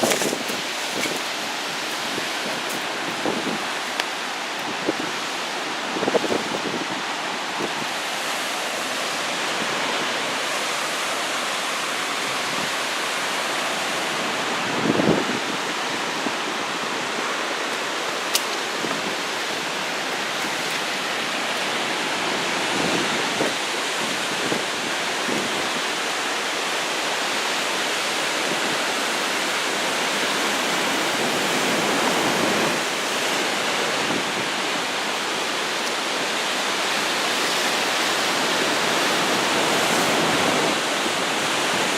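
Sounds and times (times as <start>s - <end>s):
wind buffeting microphone: 0.0s - 10.8s
heavy surf breaking waves: 0.0s - 41.9s.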